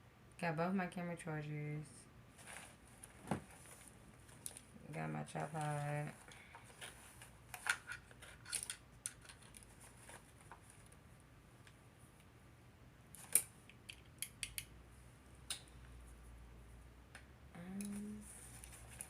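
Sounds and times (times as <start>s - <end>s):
clicks and rattles of handled gear: 5.4s - 11.0s.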